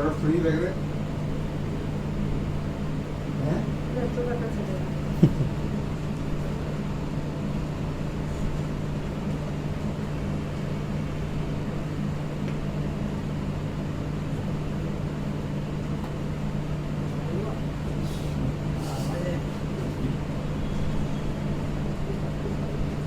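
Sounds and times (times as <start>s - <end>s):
low machine hum: 0.0s - 5.7s.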